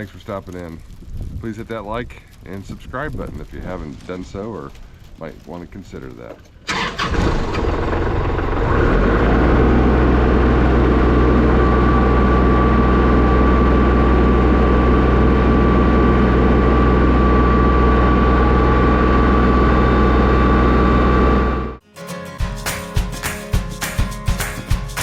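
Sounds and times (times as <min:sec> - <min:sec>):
tractor diesel engine running: 0:06.7 - 0:21.8
thin steady whine: 0:09.5 - 0:21.8.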